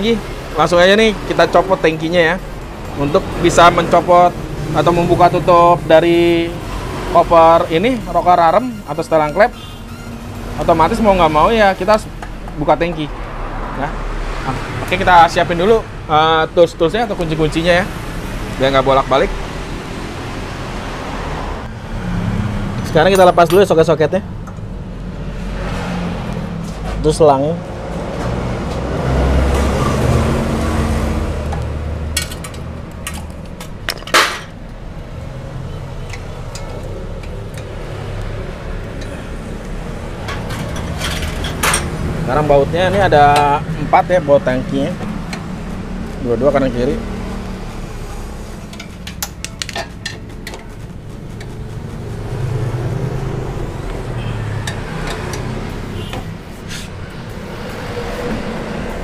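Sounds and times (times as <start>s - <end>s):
metal tools clinking: 22.8s - 23.8s, 32.2s - 34.6s, 40.2s - 42.0s
metal tools and bolts clinking: 22.8s - 24.7s, 31.5s - 34.6s, 36.0s - 37.7s, 40.2s - 42.0s, 48.6s - 50.8s.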